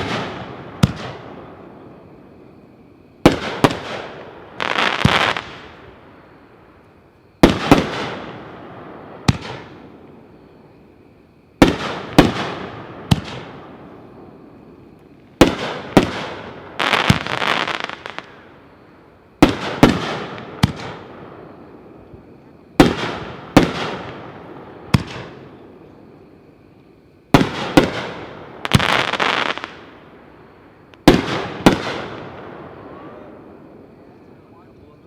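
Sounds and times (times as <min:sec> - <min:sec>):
firework cake firing: 0:00.0 - 0:01.4, 0:03.2 - 0:05.8, 0:11.6 - 0:13.6, 0:15.4 - 0:18.8, 0:19.4 - 0:21.1, 0:22.7 - 0:25.6, 0:27.3 - 0:30.0, 0:30.9 - 0:33.5.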